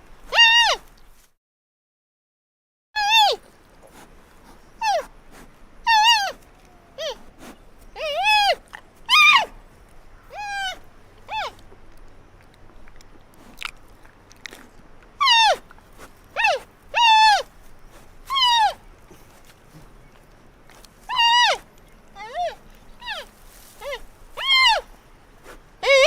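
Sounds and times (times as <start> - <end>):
panda cub squealing: 16.4 - 17.5, 18.3 - 18.8, 21.1 - 21.6, 22.2 - 24.9.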